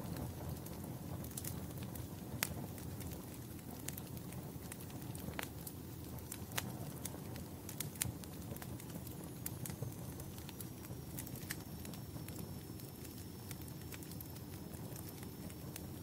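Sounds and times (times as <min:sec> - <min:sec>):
sharp pops of burning logs: 0:00.0 - 0:16.0
wood fire crackling: 0:00.0 - 0:16.0.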